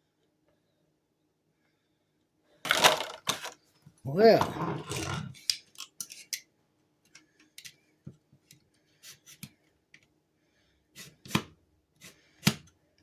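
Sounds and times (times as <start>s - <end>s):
light metal clicks and scrapes: 4.9s - 6.4s.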